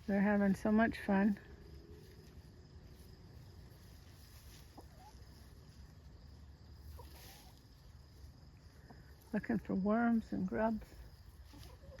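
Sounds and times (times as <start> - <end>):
chickens clucking softly: 1.7 - 9.3, 10.6 - 12.0.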